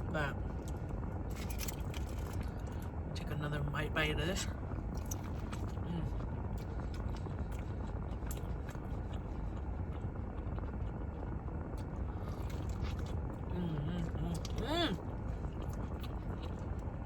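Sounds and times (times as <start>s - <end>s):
person chewing food: 4.9s - 17.0s.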